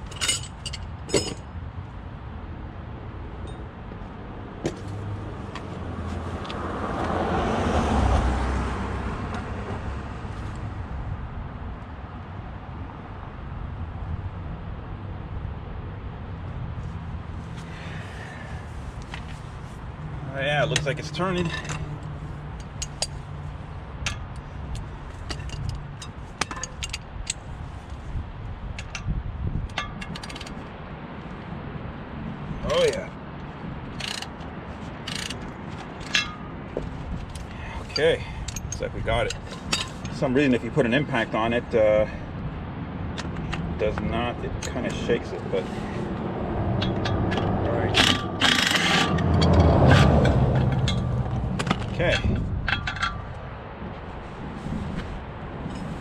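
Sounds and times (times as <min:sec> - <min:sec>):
passing vehicle road noise: 0:02.0 - 0:56.0
metallic clicks of hand tools: 0:34.0 - 0:34.4, 0:35.1 - 0:36.4, 0:46.8 - 0:53.3.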